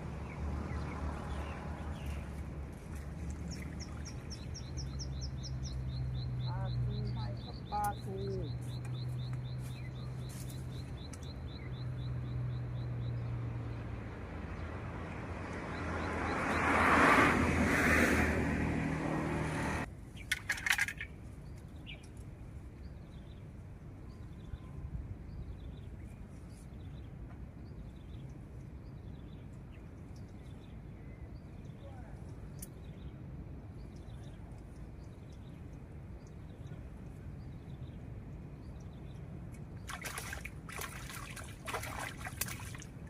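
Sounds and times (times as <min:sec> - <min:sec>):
vehicle passing by: 0:00.0 - 0:04.1, 0:12.1 - 0:19.9
birds chirping: 0:00.1 - 0:13.8, 0:20.2 - 0:43.0.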